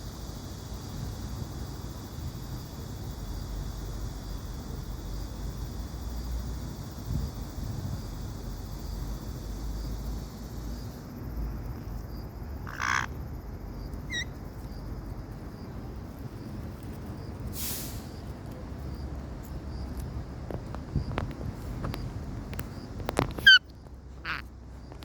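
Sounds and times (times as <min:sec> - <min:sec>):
parrot chirp: 0:12.6 - 0:13.1, 0:14.1 - 0:14.3, 0:23.4 - 0:23.6, 0:24.2 - 0:24.4
parrot harsh call: 0:12.6 - 0:13.2, 0:14.1 - 0:14.3, 0:23.4 - 0:23.6, 0:24.2 - 0:24.4
short hissy burst: 0:17.6 - 0:18.2.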